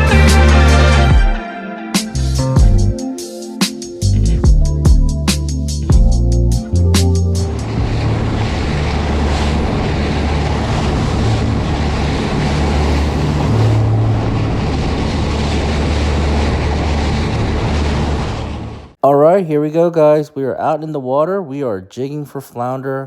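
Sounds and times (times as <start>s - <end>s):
boat engine running: 7.3s - 19.0s
water rushing past hull: 7.4s - 19.0s
wind buffeting microphone: 7.4s - 19.0s.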